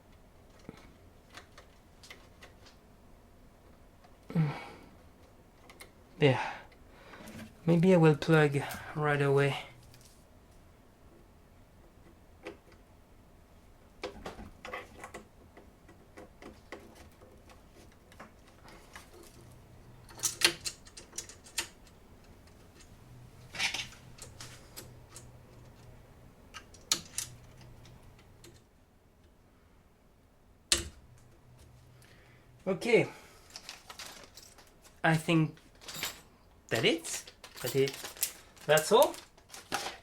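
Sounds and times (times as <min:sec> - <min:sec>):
faint low hum: 0:00.0 - 0:40.0.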